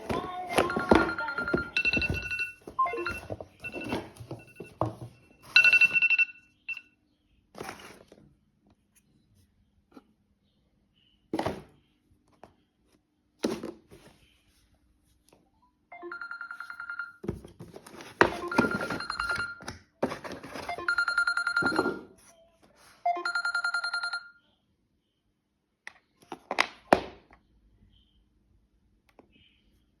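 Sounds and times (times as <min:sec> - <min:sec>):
boxes knocking: 0:00.0 - 0:06.0, 0:17.3 - 0:19.5
phone alarm beeping: 0:00.1 - 0:06.8, 0:15.9 - 0:17.2, 0:18.2 - 0:19.7, 0:20.6 - 0:22.1, 0:23.1 - 0:24.3.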